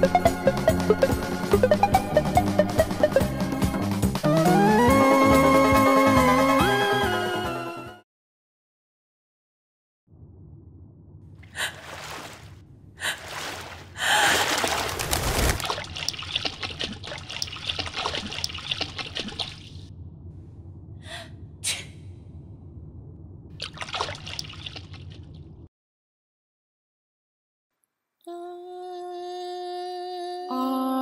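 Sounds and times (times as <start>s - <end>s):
person gasping: 14.0s - 14.6s, 21.0s - 22.0s.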